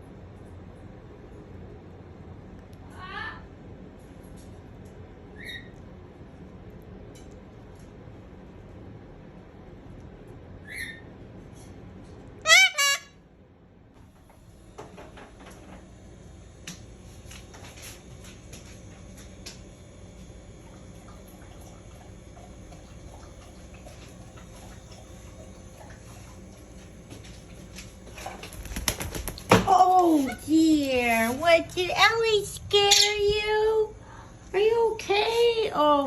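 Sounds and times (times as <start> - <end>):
cockatoo chirp: 10.6 - 11.1, 12.4 - 13.1
cockatoo wavering call: 12.4 - 13.1.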